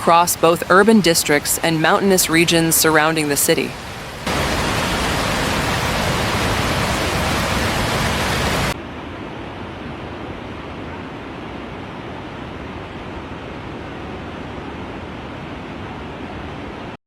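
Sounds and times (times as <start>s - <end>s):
water rushing: 0.0s - 8.8s.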